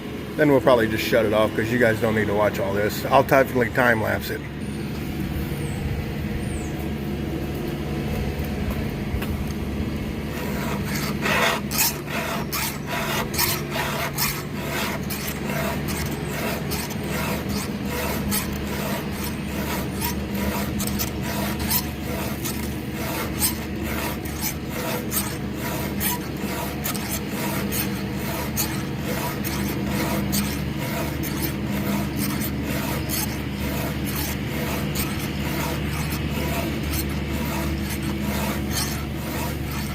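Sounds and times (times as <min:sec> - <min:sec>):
steady low hum: 0:00.0 - 0:39.9
file rasping on chainsaw chain: 0:10.2 - 0:39.9.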